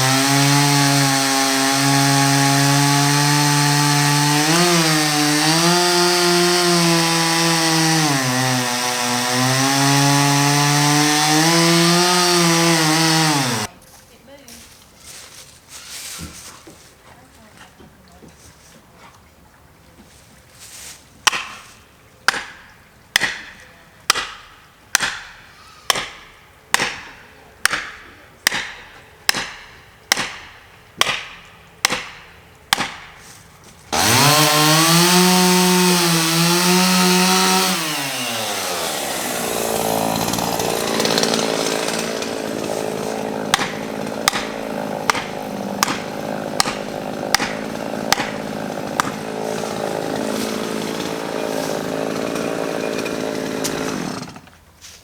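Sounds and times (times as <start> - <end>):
chainsaw revving and cutting: 0.0 - 13.7, 33.9 - 54.6
sharp strikes on wood: 21.2 - 21.6, 22.3 - 33.2, 40.8 - 51.2.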